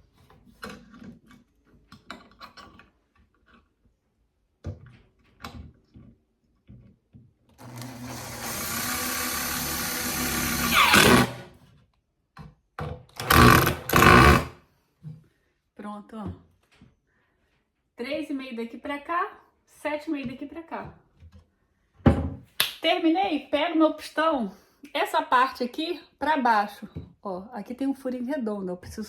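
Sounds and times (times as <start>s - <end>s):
power drill driving a screw: 7.6s - 11.5s, 13.2s - 14.5s.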